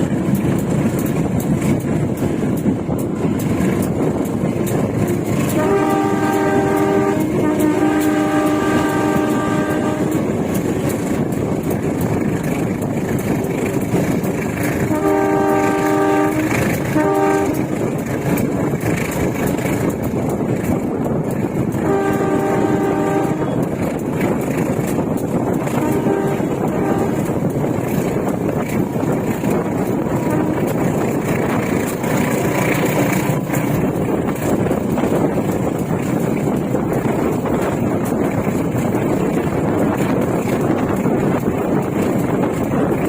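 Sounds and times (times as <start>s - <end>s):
train wheels rumbling on rails: 0.0s - 43.0s
train horn blasts: 5.0s - 11.1s, 14.8s - 18.0s, 21.7s - 24.5s, 25.6s - 27.5s, 29.4s - 32.0s.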